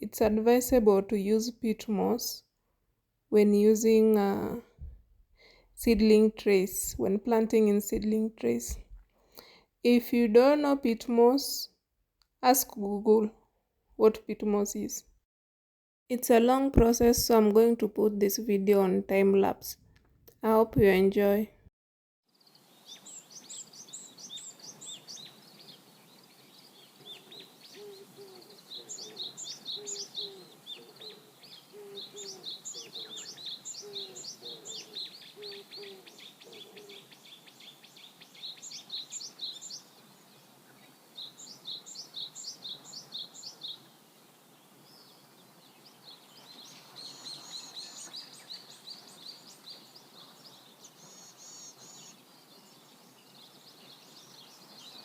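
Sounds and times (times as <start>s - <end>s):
birds chirping rapidly: 22.4s - 43.9s, 44.9s - 55.0s
soft lower bird call: 26.9s - 39.9s, 45.8s - 52.2s.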